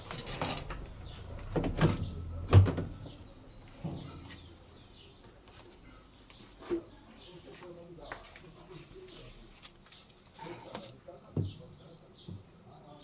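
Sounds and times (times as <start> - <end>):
low hum: 0.0 - 4.9
knocks and clunks: 0.0 - 5.4.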